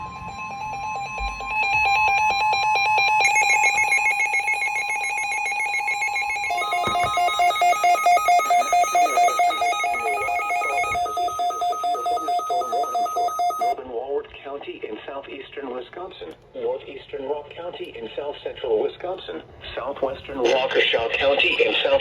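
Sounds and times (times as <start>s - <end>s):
pulsing two-tone beep: 0.0s - 13.8s
steady high alarm tone: 0.0s - 13.8s
warbling electronic beep: 0.4s - 13.8s.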